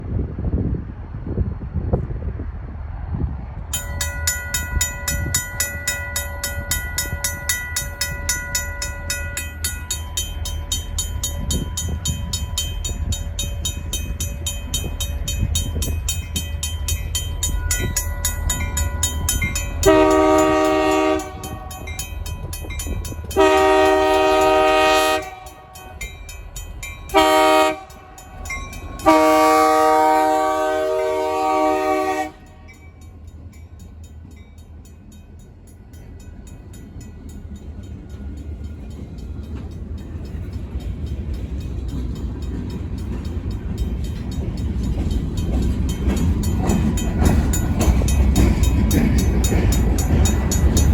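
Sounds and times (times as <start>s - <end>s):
mechanical crossing bell ringing: 3.8s - 30.8s, 31.6s - 50.9s
locomotive air horn blasts: 19.8s - 21.9s, 23.4s - 26.0s, 27.1s - 28.2s, 29.0s - 32.7s.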